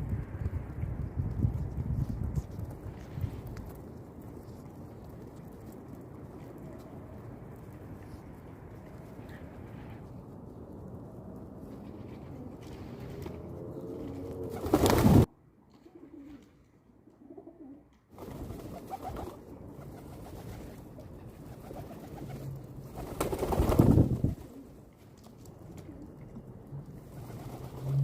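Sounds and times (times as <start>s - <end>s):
pigeons cooing: 17.2s - 17.8s.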